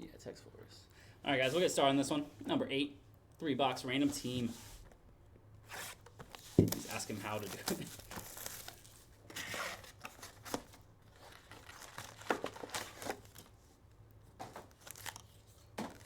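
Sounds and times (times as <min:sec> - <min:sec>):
plastic wrapper crinkling and tearing: 0:06.2 - 0:13.5, 0:14.7 - 0:16.0.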